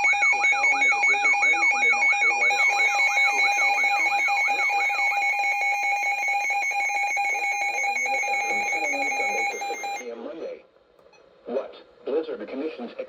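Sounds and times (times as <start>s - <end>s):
warbling siren tone: 0.0s - 10.0s
steady electronic alarm tone: 0.0s - 10.1s.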